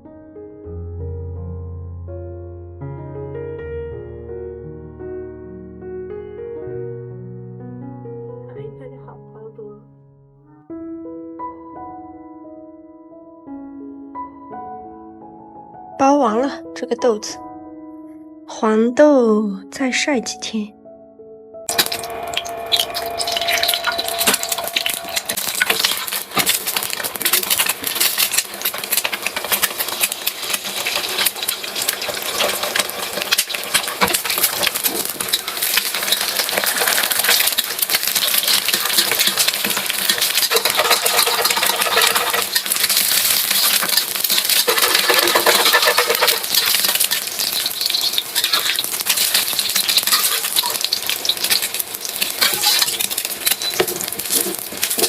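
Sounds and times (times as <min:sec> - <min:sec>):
dried beans rattling: 0:23.8 - 0:55.0.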